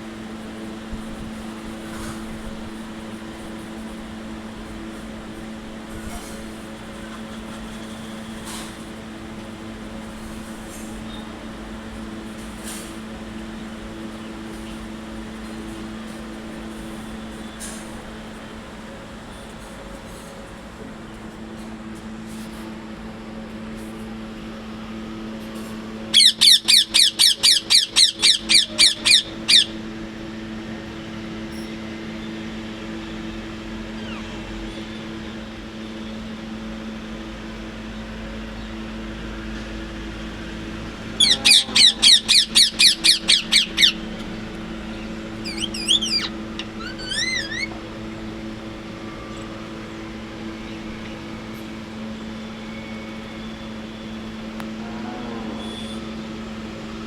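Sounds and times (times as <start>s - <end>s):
parrot shrill repeated calls: 26.1s - 29.8s, 41.2s - 44.0s, 45.4s - 47.9s
low hum: 40.5s - 57.0s.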